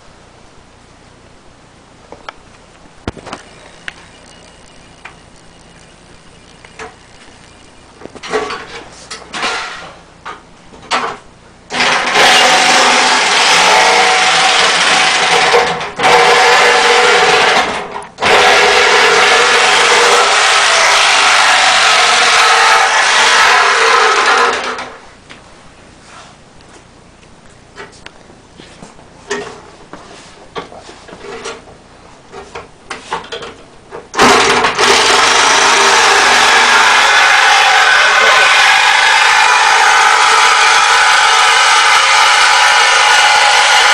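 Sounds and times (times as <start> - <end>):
power saw cutting sheet metal: 3.2 - 10.0, 11.7 - 25.0, 34.2 - 43.9.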